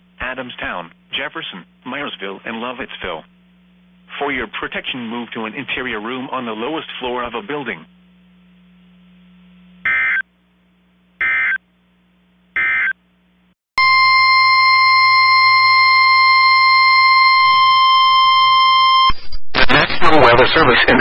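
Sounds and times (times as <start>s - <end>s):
steady high warning tone: 9.8s - 10.3s, 11.2s - 11.6s, 13.8s - 19.2s.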